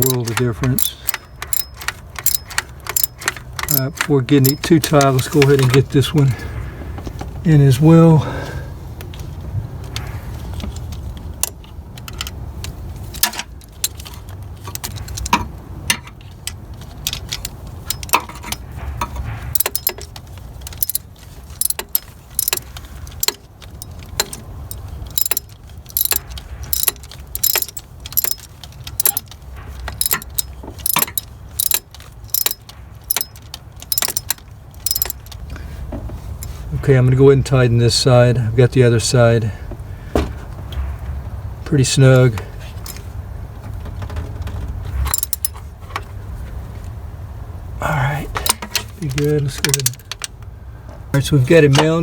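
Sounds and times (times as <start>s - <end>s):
ratchet clicking: 0.0s - 5.6s, 13.1s - 35.4s, 45.1s - 45.6s
steady low rumble: 0.0s - 52.0s.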